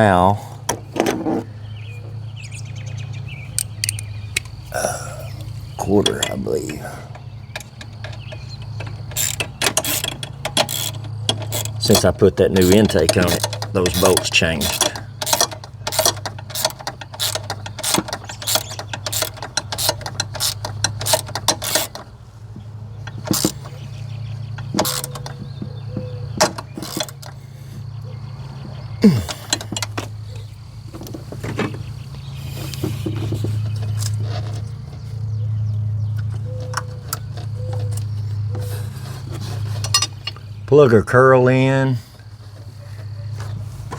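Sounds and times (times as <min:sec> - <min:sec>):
metal tools clinking: 0:05.8 - 0:22.1, 0:36.7 - 0:40.5
ratchet wrench clicking: 0:07.6 - 0:22.0.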